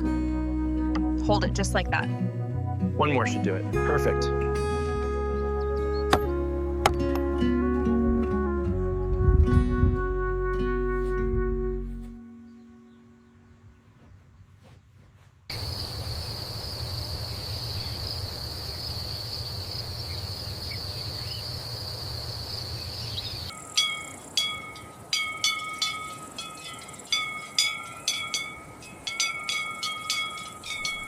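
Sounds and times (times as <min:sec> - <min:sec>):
low rumble: 0:07.9 - 0:10.4
high insect buzz: 0:15.5 - 0:24.3
metallic clanks ringing: 0:23.6 - 0:31.0.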